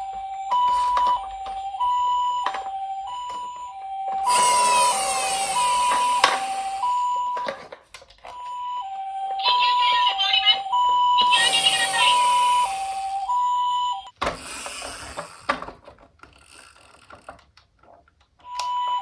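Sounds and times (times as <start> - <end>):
toy electronic siren: 0.0 - 7.7, 8.3 - 15.6, 18.5 - 19.0
toy car rolling rattle: 14.2 - 18.1.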